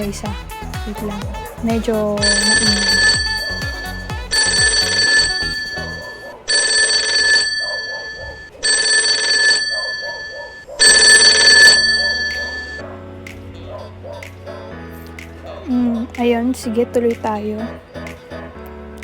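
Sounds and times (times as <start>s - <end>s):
telephone bell ringing: 2.2s - 12.8s.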